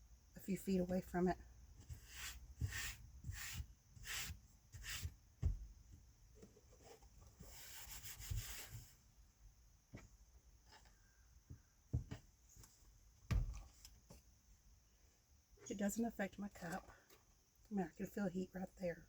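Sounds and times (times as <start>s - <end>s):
soft rubbing strokes: 1.8s - 5.1s, 6.7s - 9.1s.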